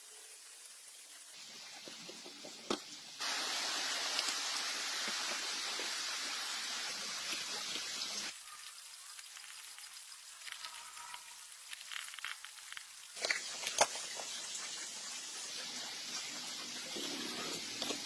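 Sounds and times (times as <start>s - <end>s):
hiss of spray or escaping air: 3.2s - 8.3s.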